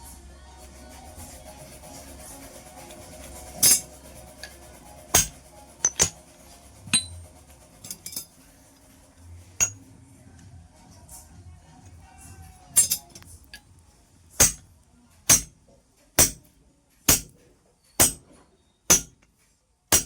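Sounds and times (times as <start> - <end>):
faint music: 0.0 - 20.0
metal clinks and taps: 5.2 - 6.2, 6.9 - 7.2, 7.8 - 8.3.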